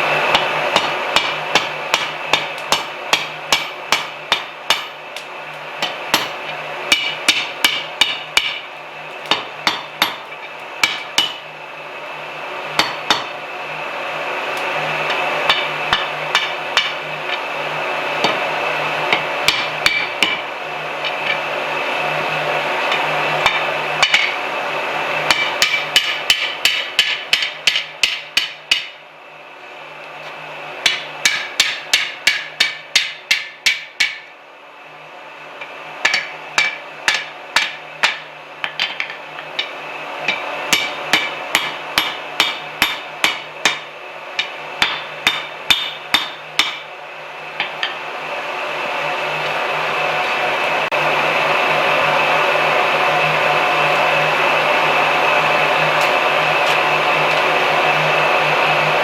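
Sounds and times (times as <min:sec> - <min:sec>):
hammer striking steel on anvil: 0:00.3 - 0:11.5, 0:12.8 - 0:13.4, 0:15.1 - 0:17.5, 0:18.2 - 0:18.5, 0:19.1 - 0:21.5, 0:22.9 - 0:24.4, 0:25.3 - 0:29.0, 0:30.8 - 0:34.3, 0:35.6 - 0:46.9, 0:47.6 - 0:48.0.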